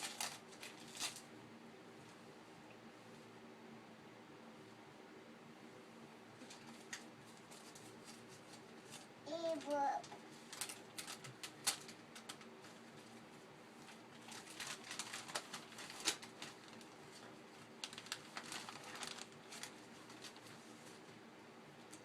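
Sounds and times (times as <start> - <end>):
packaging clicking and crinkling: 0.0 - 1.3, 10.5 - 12.6, 13.8 - 20.5.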